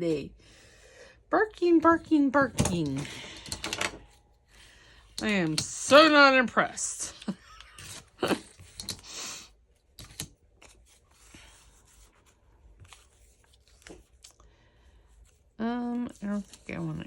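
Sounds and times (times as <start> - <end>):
paper rustling: 10.0 - 14.4, 15.2 - 17.0.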